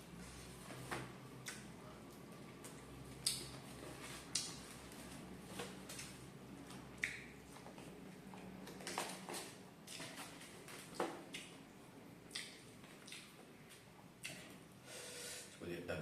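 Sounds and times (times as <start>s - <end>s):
person chewing crispy food: 2.5s - 7.9s, 12.3s - 14.5s.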